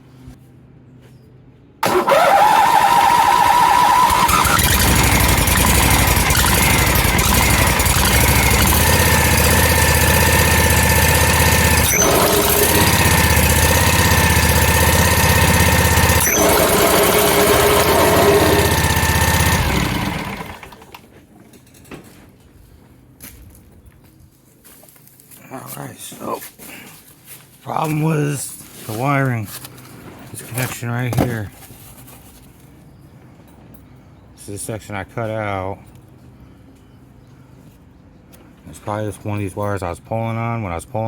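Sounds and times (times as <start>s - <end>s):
mower engine running: 1.8s - 21.0s.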